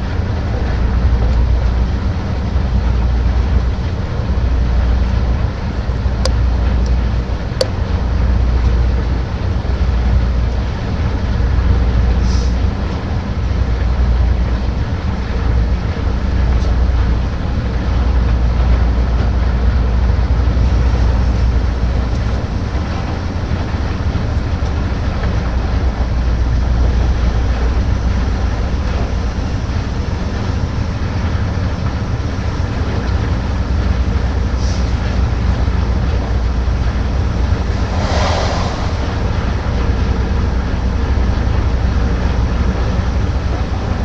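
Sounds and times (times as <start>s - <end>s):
heavy machinery rumbling: 37.0s - 40.7s.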